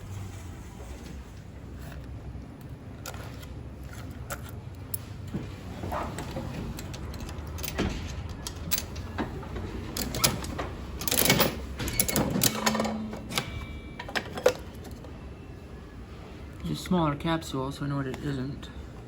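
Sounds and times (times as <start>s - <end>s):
steady low hum: 0.0s - 19.0s
vending machine clicks and knocks: 6.4s - 14.9s.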